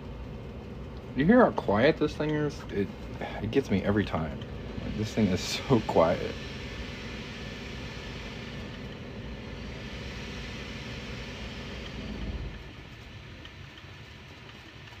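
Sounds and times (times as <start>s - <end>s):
printer motors and fans whirring: 0.0s - 15.0s.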